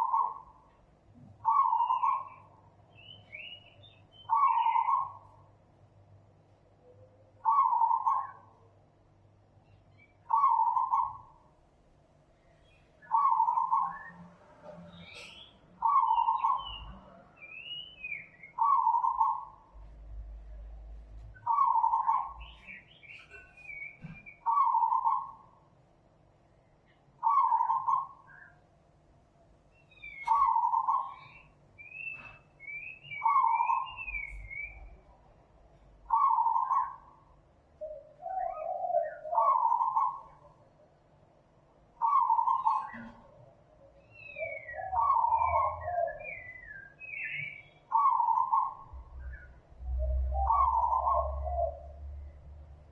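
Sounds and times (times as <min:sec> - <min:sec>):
bird hooting: 0:00.0 - 0:00.7, 0:01.4 - 0:02.6, 0:04.2 - 0:05.4, 0:07.4 - 0:08.6, 0:10.2 - 0:11.4, 0:13.0 - 0:14.3, 0:15.0 - 0:19.7, 0:21.4 - 0:25.6, 0:27.2 - 0:28.6, 0:29.9 - 0:35.1, 0:36.1 - 0:37.2, 0:37.8 - 0:40.6, 0:42.0 - 0:43.4, 0:44.1 - 0:52.3
birds chirping and twittering: 0:00.0 - 0:52.9.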